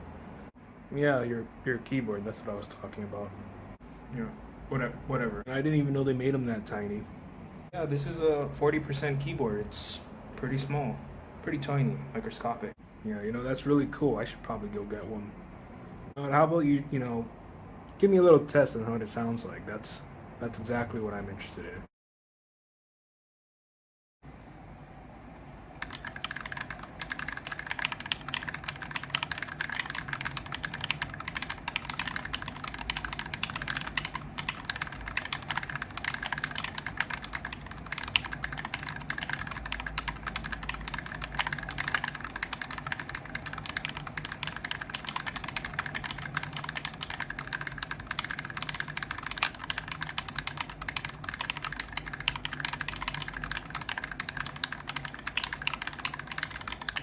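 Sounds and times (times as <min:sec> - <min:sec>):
fast mechanical keyboard typing: 0:25.8 - 0:57.0.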